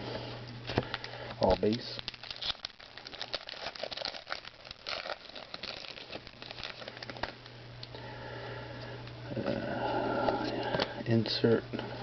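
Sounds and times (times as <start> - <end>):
trading cards flipping and rustling: 0.7 - 7.5.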